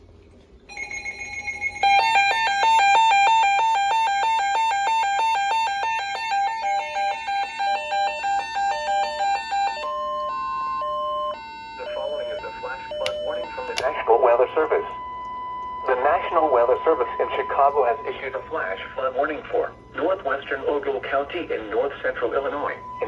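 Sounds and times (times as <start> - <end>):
electronic beeps alternating low and high: 22.6 - 23.0.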